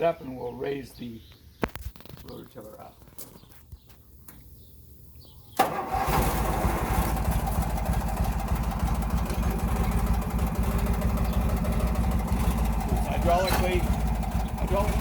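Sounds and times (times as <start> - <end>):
tractor engine starting and running: 5.6 - 15.0.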